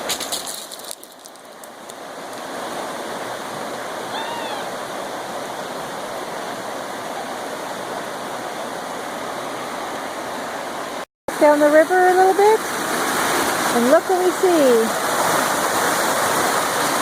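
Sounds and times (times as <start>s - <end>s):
creek water rushing: 0.0s - 17.0s
high arched call: 4.1s - 4.8s.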